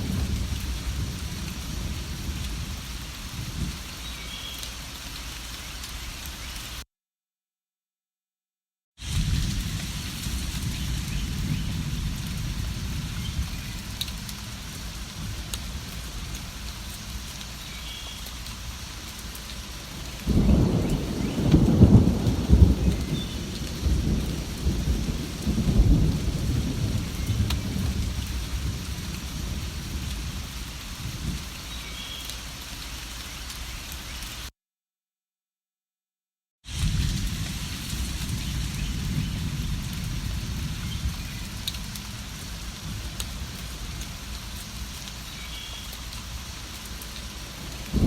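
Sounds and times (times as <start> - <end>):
thunder rumbling: 0.0 - 3.8, 9.0 - 16.8, 19.9 - 31.5, 36.7 - 44.8, 47.3 - 48.0
steady rain: 0.0 - 6.8, 9.0 - 34.5, 36.7 - 48.0.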